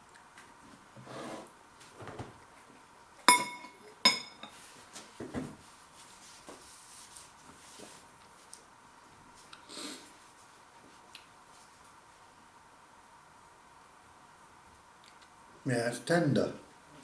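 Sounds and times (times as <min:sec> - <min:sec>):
cutlery clinking against a dish: 0:03.3 - 0:04.6.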